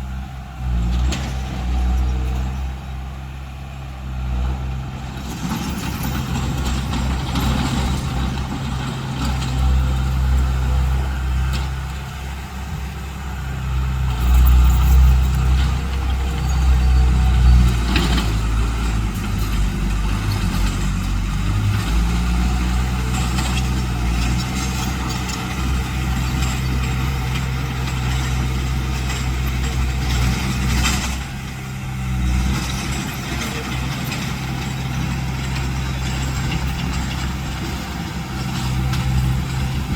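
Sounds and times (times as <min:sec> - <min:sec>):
diesel engine under load: 0:00.0 - 0:39.9.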